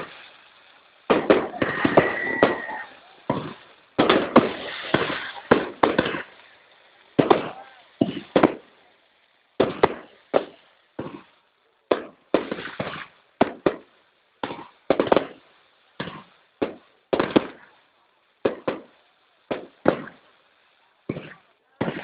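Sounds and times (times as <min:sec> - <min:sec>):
fireworks bursting with bangs: 0:00.0 - 0:22.0
fireworks crackle: 0:00.0 - 0:22.0.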